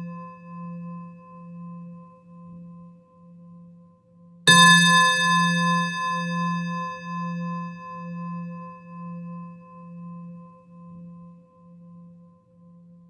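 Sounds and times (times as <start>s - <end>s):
singing bowl ringing: 0.0s - 1.1s, 4.5s - 10.5s.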